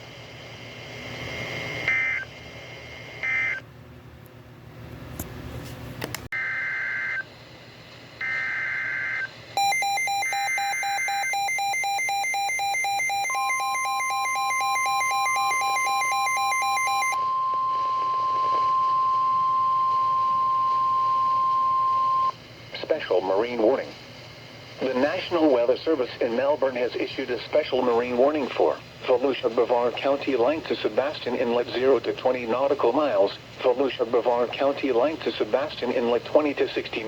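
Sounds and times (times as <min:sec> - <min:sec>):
steady warning alarm tone: 0:08.2 - 0:22.4
rapid electronic beeping: 0:09.6 - 0:17.2.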